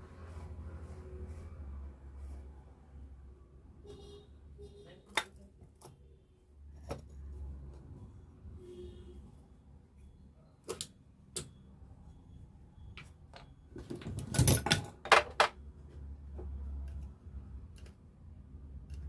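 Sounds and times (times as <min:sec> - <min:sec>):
metal parts clanking and rattling: 0:13.8 - 0:15.6
metal parts clicking: 0:14.1 - 0:15.5.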